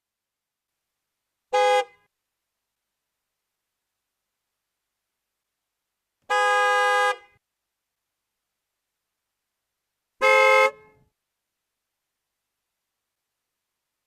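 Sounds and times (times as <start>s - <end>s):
car horn honking: 1.5s - 2.1s, 6.3s - 7.4s, 10.2s - 11.1s.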